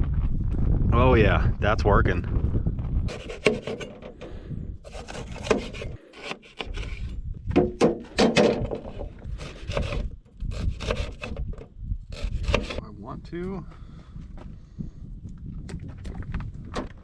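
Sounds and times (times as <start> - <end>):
wind rumbling on microphone: 0.0 - 17.0.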